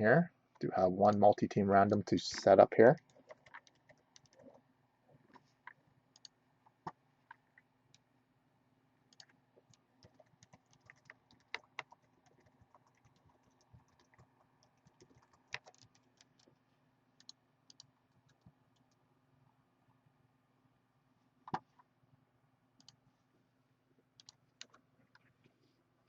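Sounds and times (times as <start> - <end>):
computer keyboard typing: 2.9 - 4.6, 6.1 - 6.4, 9.1 - 16.6, 17.2 - 19.0, 24.2 - 24.8.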